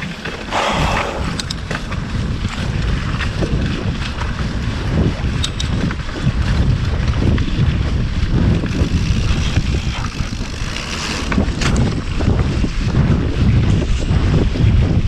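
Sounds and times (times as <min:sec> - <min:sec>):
wind buffeting microphone: 0:00.0 - 0:15.0
bike clicks and knocks: 0:05.2 - 0:07.8, 0:08.6 - 0:12.8.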